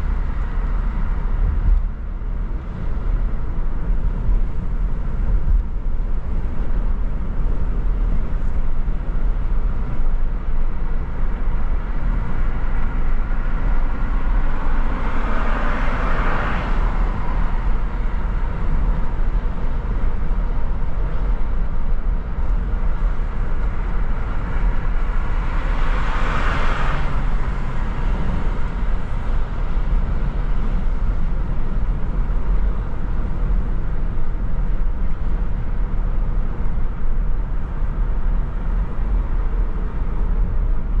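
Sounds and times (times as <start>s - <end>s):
car road rumble: 0.0s - 41.0s
vehicles swishing by: 11.0s - 34.4s.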